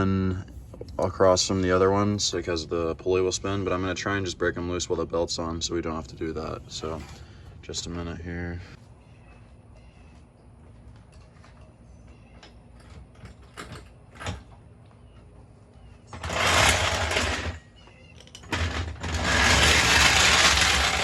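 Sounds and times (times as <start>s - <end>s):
power wrench rattling: 16.2s - 17.6s, 18.3s - 21.0s.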